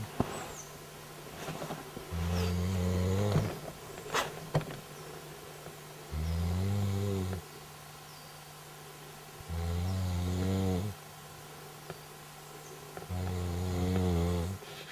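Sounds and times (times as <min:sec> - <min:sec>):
person snoring loudly: 0:02.1 - 0:03.6, 0:06.1 - 0:07.4, 0:09.5 - 0:11.0, 0:13.1 - 0:14.6.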